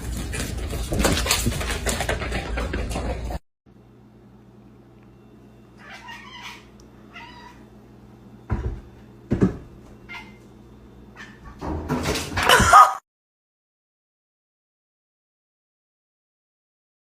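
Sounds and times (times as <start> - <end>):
cat meowing: 5.8 - 7.6.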